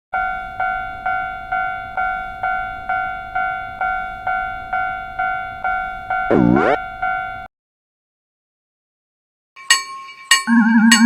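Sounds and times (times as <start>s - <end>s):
railroad crossing bell ringing: 0.2s - 7.5s, 9.6s - 11.0s.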